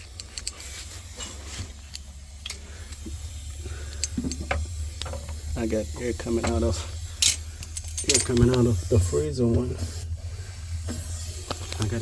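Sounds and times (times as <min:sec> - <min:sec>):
tools clicking on tubing: 0:00.0 - 0:00.7, 0:01.9 - 0:03.2, 0:03.8 - 0:05.4
gas hissing from tube: 0:00.0 - 0:12.0.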